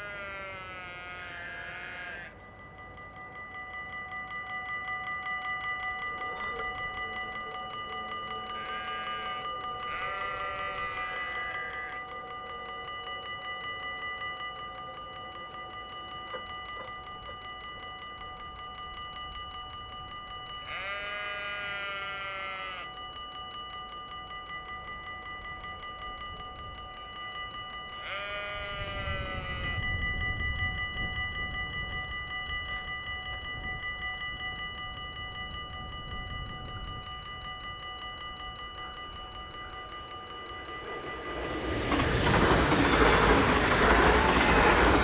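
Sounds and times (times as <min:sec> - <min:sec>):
level-crossing warning bells: 0:00.0 - 0:45.0
passing train rumble: 0:35.4 - 0:45.0.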